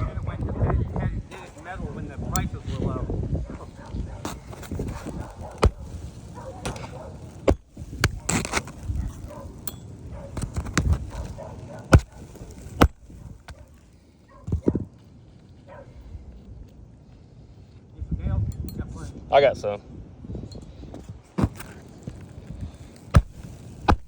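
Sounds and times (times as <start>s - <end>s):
knocks and taps on roof shingles: 4.3s - 9.6s.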